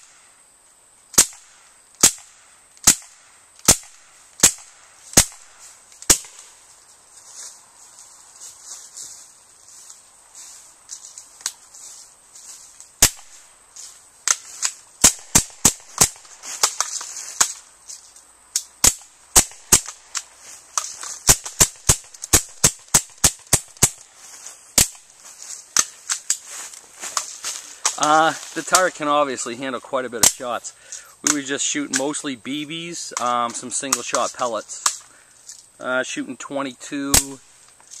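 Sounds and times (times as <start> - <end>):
air guns firing: 1.1 - 6.4, 13.0 - 13.3, 15.0 - 17.5, 18.8 - 20.0, 21.2 - 24.0.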